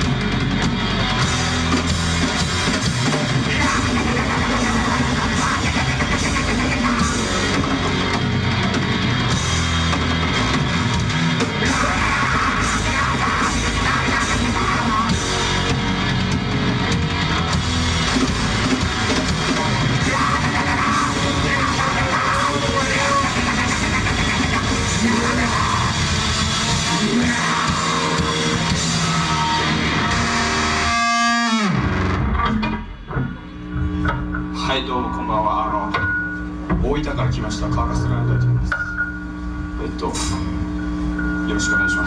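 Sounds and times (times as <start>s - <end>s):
yelled vocals: 0.0s - 31.2s
drum kit: 0.0s - 34.6s
distorted guitar: 0.0s - 42.0s.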